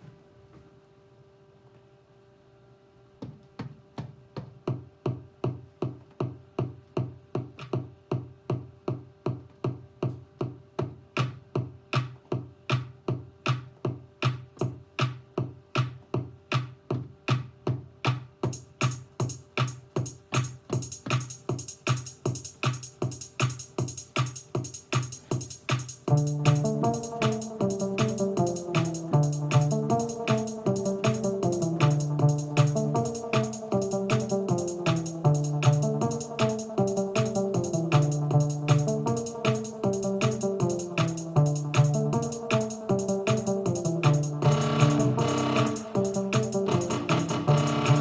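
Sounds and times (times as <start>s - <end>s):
bright hi-hat hits: 18.4s - 48.0s.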